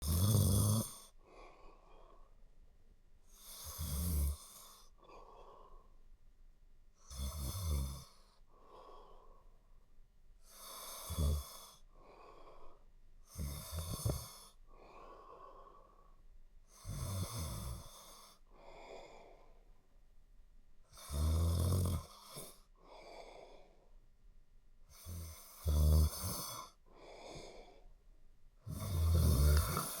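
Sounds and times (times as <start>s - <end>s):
person snoring: 0.0s - 2.2s, 3.3s - 5.9s, 7.0s - 9.4s, 10.5s - 16.1s, 16.7s - 19.5s, 20.9s - 23.8s, 24.9s - 27.8s, 28.6s - 30.0s.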